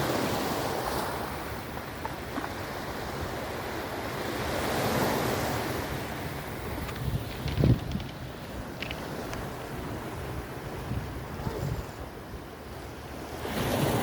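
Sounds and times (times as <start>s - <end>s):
sea surf washing ashore: 0.0s - 14.0s
wind buffeting microphone: 4.2s - 14.0s.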